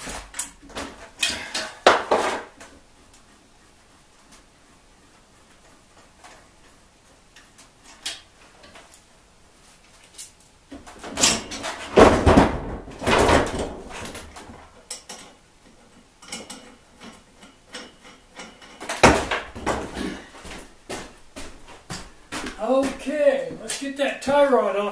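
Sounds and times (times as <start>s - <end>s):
tools and metal parts clattering: 0.0s - 2.7s, 10.1s - 20.1s.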